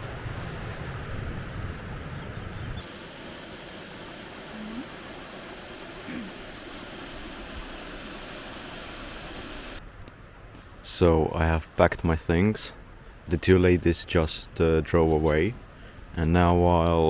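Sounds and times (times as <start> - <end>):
wind rumble on microphone: 0.0 - 2.8
outdoor background hiss: 0.0 - 17.0
faint rising calls: 2.8 - 9.8.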